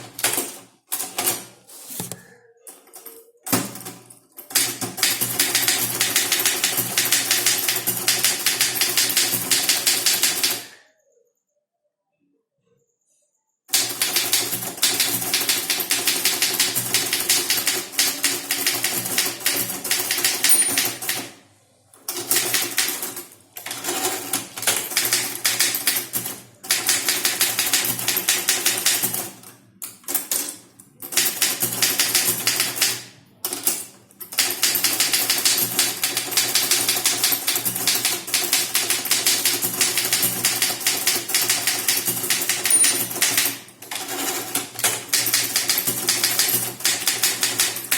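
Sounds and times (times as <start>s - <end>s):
typewriter typing fast: 4.5s - 10.7s, 13.7s - 21.3s, 22.1s - 29.4s, 31.0s - 47.9s.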